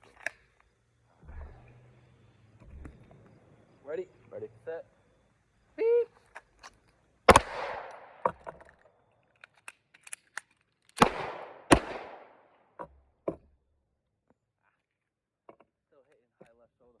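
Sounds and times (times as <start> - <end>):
magazine change clicks: 6.3 - 12.5
pistol shots: 7.2 - 8.5, 11.0 - 12.8.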